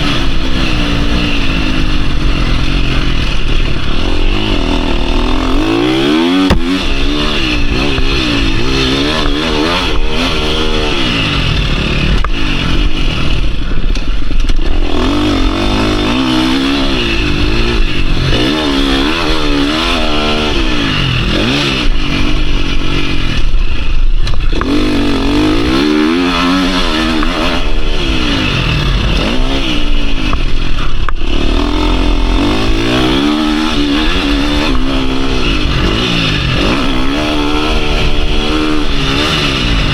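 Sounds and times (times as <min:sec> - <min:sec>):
motocross engine revving: 0:00.0 - 0:39.9
sharp knocks and clatter: 0:06.3 - 0:08.2.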